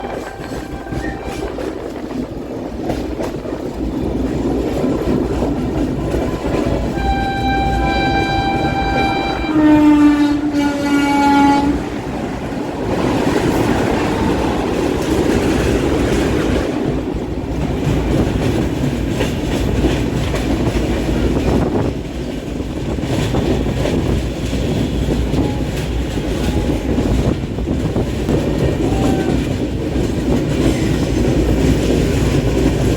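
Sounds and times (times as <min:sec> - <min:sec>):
train horn: 0:00.0 - 0:02.0, 0:06.3 - 0:12.1, 0:24.8 - 0:27.0
train rumble and wheel clatter: 0:00.0 - 0:32.9.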